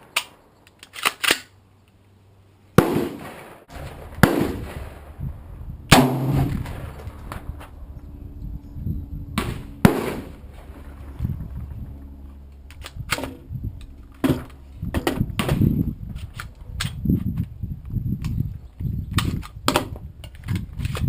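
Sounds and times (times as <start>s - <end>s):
rifle firing single shots: 2.8s - 5.1s, 5.9s - 7.0s, 9.4s - 10.4s.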